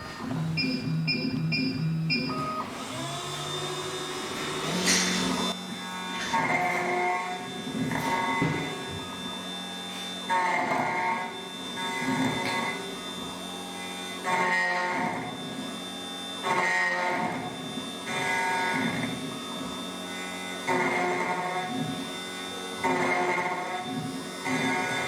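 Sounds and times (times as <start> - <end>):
key cutting machine whine: 0.0 - 25.0.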